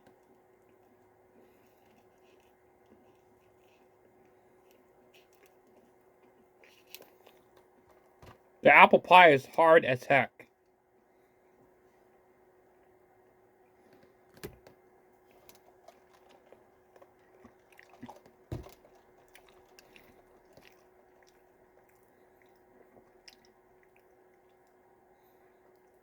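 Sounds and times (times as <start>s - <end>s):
person chewing and crunching: 0.2s - 8.2s, 15.3s - 24.9s.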